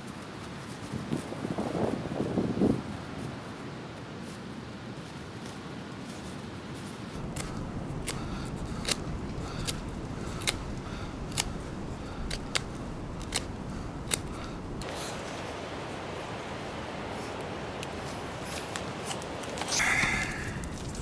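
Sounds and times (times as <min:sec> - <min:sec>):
wind rumble: 0:07.1 - 0:21.0
bright rushing hiss: 0:07.2 - 0:21.0.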